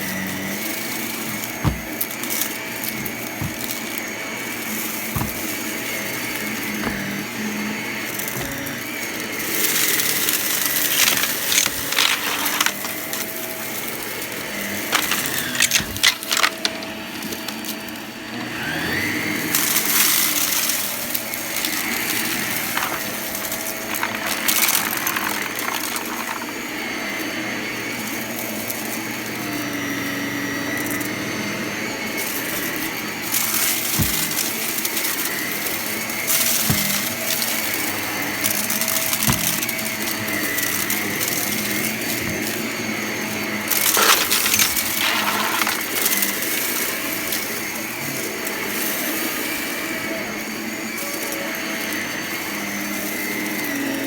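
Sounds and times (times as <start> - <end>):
vacuum cleaner running: 0.0 - 54.0
debris crackling in vacuum: 0.1 - 17.7, 19.0 - 27.3, 43.5 - 47.8.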